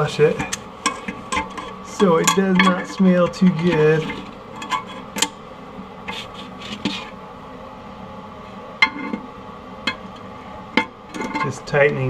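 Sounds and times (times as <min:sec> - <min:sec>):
exhaust fan hum: 0:00.0 - 0:12.0
metal clicks and scrapes: 0:00.3 - 0:05.4, 0:06.1 - 0:07.1, 0:10.8 - 0:11.6.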